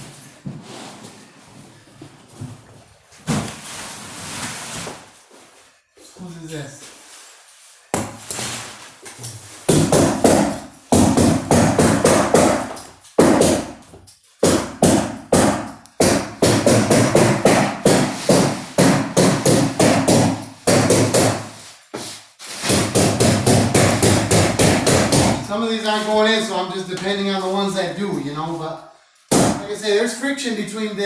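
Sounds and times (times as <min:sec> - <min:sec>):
hammer stapler strikes: 0:09.7 - 0:13.8, 0:14.4 - 0:21.5, 0:22.6 - 0:25.5, 0:29.3 - 0:29.6.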